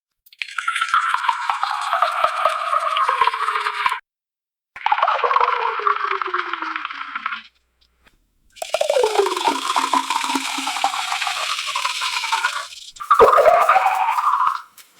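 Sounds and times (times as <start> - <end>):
soda pouring and fizzing: 0.3 - 4.0, 4.8 - 7.5, 8.5 - 14.8.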